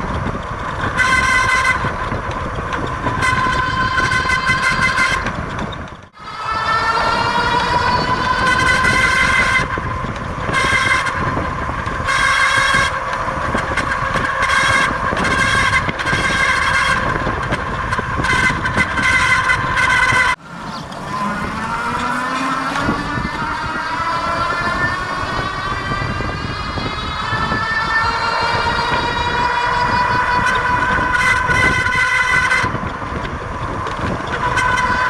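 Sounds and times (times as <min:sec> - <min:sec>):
electric hub motor whining: 0:00.0 - 0:35.0
harsh grinding noise: 0:00.0 - 0:35.0.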